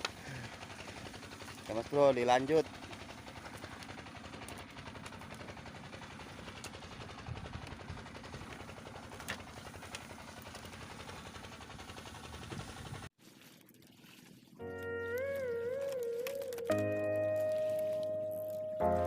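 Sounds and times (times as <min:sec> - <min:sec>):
small engine chugging: 0:00.0 - 0:13.1.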